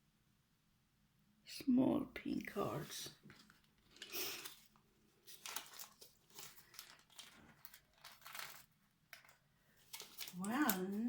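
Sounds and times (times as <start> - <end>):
plastic bags crinkling: 3.3 - 11.0.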